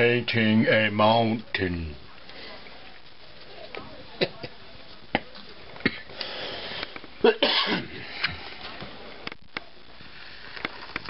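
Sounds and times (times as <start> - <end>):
person coughing: 7.2 - 8.1.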